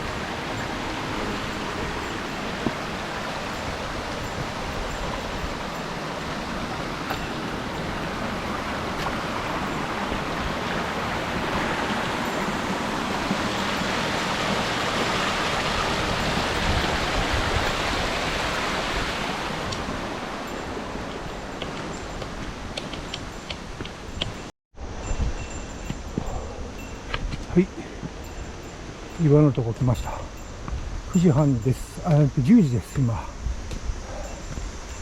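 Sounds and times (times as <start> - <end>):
mountain stream rushing: 0.0 - 25.0.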